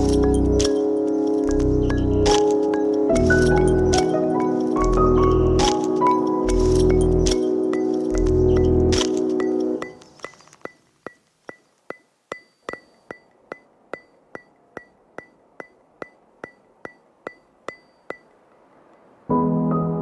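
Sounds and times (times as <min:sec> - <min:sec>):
keyboard chords: 0:00.0 - 0:10.0, 0:19.3 - 0:20.0.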